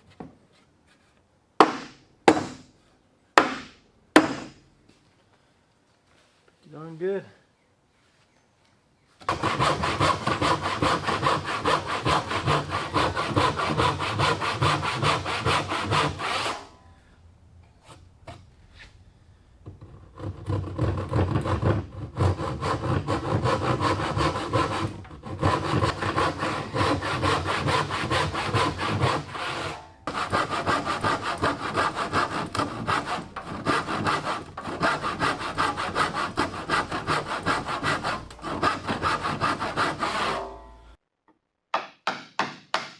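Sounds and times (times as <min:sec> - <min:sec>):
saw cutting through wood: 0:09.2 - 0:16.7, 0:20.2 - 0:40.6.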